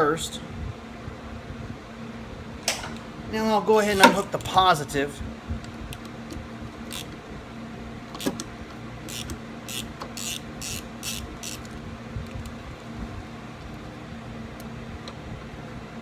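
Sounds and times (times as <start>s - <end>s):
ratchet wrench ratcheting: 6.8s - 7.2s, 9.1s - 11.8s.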